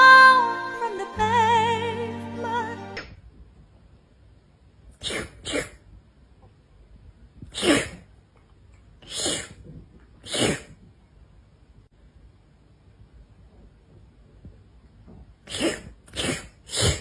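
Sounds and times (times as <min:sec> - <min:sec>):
person sneezing: 0:05.0 - 0:05.8, 0:07.5 - 0:08.0.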